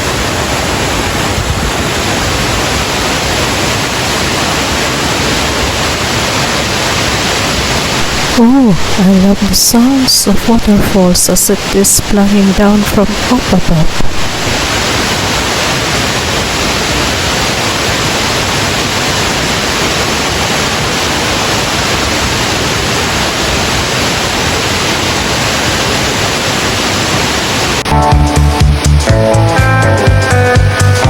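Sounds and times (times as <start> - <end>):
waterfall rushing: 0.0 - 30.9
background music with drums: 27.9 - 31.0.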